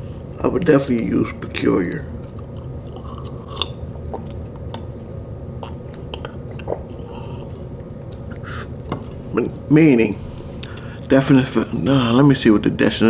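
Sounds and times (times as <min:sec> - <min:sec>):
low background hum: 0:00.0 - 0:13.0
man chewing: 0:01.9 - 0:09.4
wet mouth clicks: 0:05.6 - 0:08.7.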